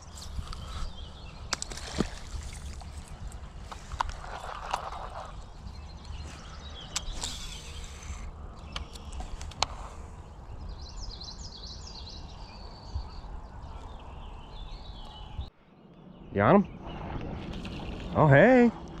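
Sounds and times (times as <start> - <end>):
steady low rumble: 0.0 - 19.0
small bird chirping: 3.7 - 18.2
sharp clicks: 6.8 - 9.8.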